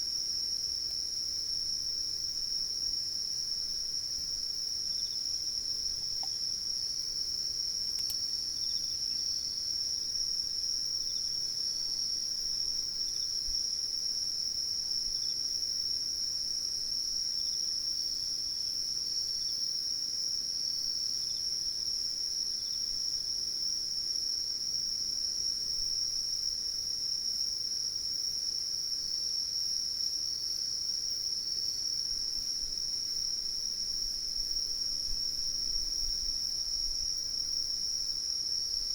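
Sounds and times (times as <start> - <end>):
faint insect chirps: 0.0 - 38.9
insect high steady trill: 0.1 - 25.6.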